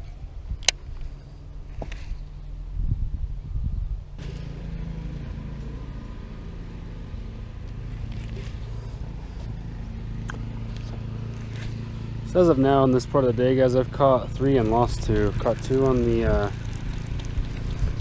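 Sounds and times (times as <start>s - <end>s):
boat motor running: 4.2s - 18.0s.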